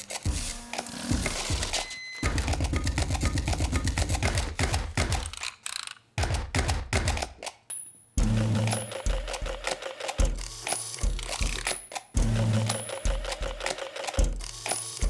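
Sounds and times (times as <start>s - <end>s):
rhythmic mechanical clicking: 0.0s - 7.6s, 8.2s - 15.0s.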